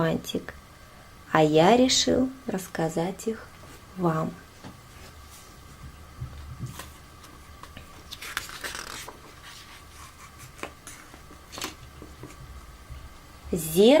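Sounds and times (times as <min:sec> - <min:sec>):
book page turning: 0:06.6 - 0:11.8.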